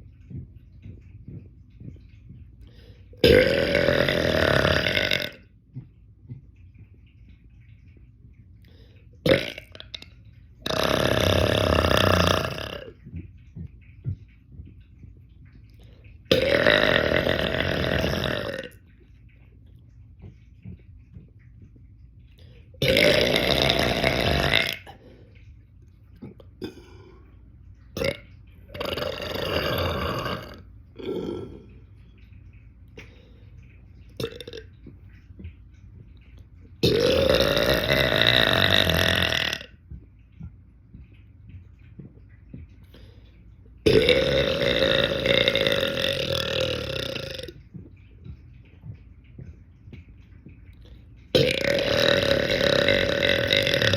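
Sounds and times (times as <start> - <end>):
man belching: 3.2 - 5.5, 9.3 - 9.9, 10.6 - 13.0, 16.3 - 18.8, 22.8 - 25.0, 28.0 - 31.7, 34.2 - 34.6, 36.8 - 39.8, 43.9 - 47.6, 51.4 - 53.9
man burping: 3.2 - 5.5, 9.3 - 9.8, 10.6 - 12.9, 16.3 - 18.8, 22.8 - 25.0, 28.0 - 31.7, 36.8 - 39.8, 43.9 - 47.6, 51.4 - 53.9.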